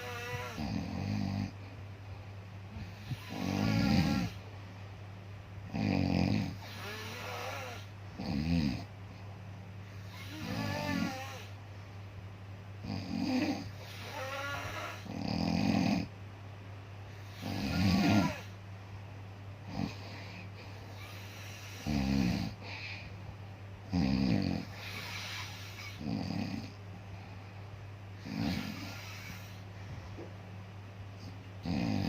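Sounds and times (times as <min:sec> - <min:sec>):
person snoring: 0:00.0 - 0:01.6, 0:02.8 - 0:04.4, 0:05.7 - 0:08.9, 0:09.9 - 0:11.6, 0:12.8 - 0:16.1, 0:17.1 - 0:18.6, 0:19.7 - 0:22.9, 0:23.9 - 0:26.8, 0:28.2 - 0:29.6, 0:31.6 - 0:32.0
steady low hum: 0:00.0 - 0:32.0.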